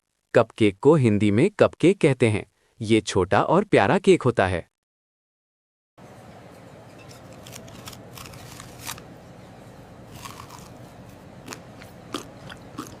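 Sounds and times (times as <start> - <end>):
crunchy bites and chewing: 7.1 - 9.1, 10.1 - 13.0.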